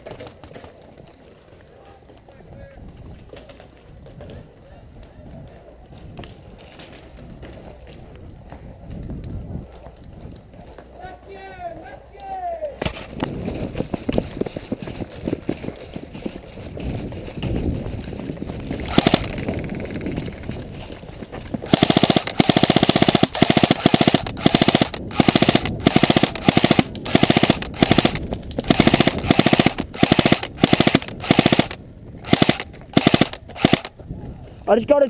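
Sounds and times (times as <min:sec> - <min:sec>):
airsoft gun automatic fire: 0:18.8 - 0:20.3, 0:21.6 - 0:33.9.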